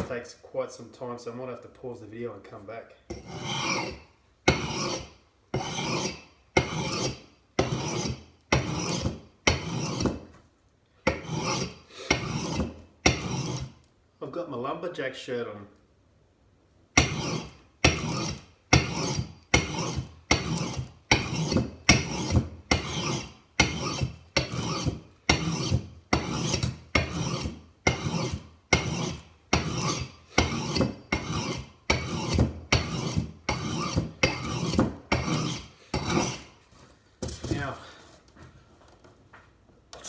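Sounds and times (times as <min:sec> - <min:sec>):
sharpening stone scraping axe: 0:03.1 - 0:10.2, 0:11.1 - 0:13.8, 0:17.0 - 0:36.6.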